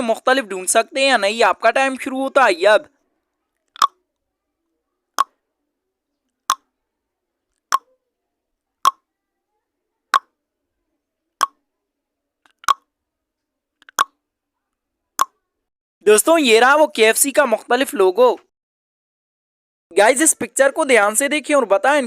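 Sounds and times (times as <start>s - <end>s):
short sharp timer pops: 12.6s - 12.8s.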